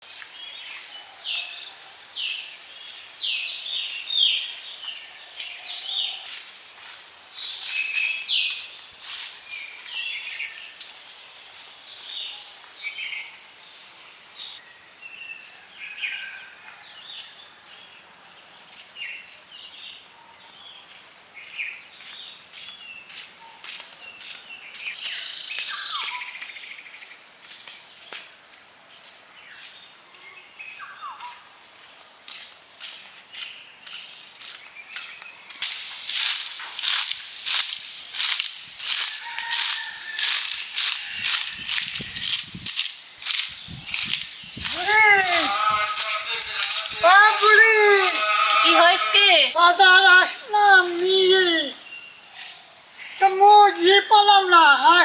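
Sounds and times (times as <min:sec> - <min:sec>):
insects droning: 0:00.0 - 0:55.0
birds chirping: 0:07.2 - 0:10.9, 0:27.5 - 0:54.6.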